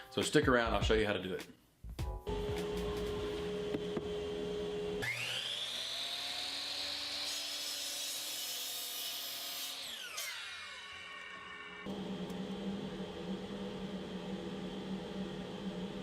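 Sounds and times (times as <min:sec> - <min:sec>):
electric saw cutting wood: 0:02.6 - 0:12.4.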